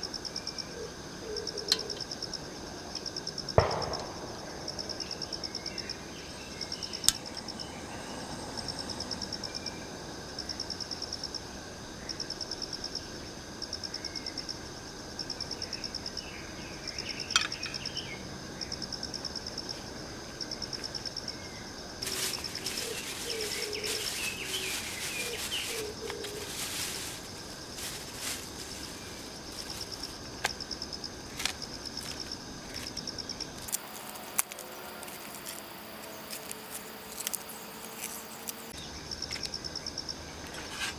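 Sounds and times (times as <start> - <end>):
insects chirping: 0.0 - 40.1
outdoor hiss: 22.0 - 29.7, 33.7 - 38.8
campfire popping and crackling: 33.7 - 38.8.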